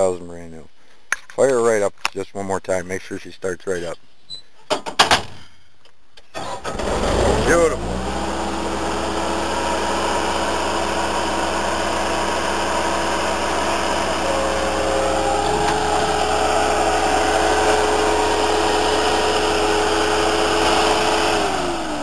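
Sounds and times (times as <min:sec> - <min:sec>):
diesel engine idling: 0:06.8 - 0:22.0.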